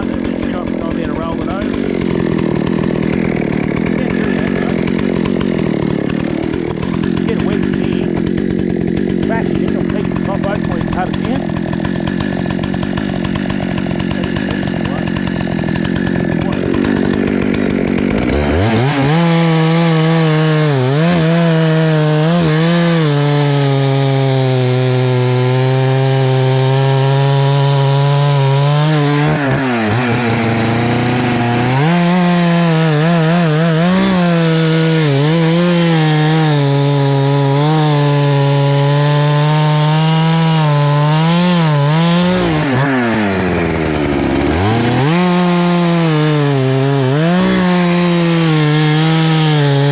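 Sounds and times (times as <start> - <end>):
chainsaw cutting wood: 0.0 - 49.9.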